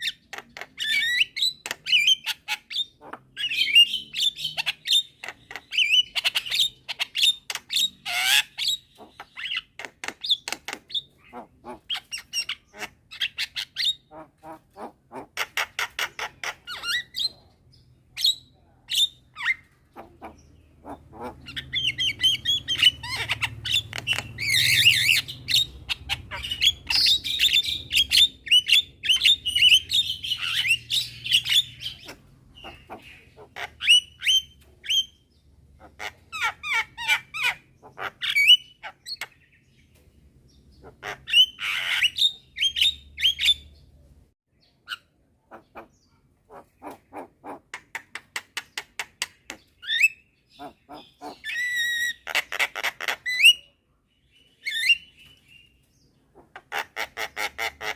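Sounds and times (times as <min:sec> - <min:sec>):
bird harsh squawks: 0:11.0 - 0:17.4, 0:19.0 - 0:35.2, 0:49.8 - 0:53.7.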